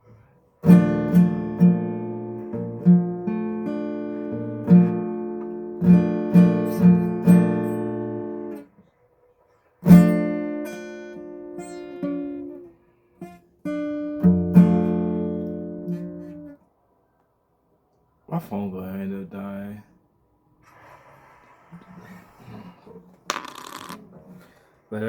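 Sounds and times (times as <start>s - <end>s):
acoustic guitar chords: 0.6s - 8.7s, 9.8s - 16.6s.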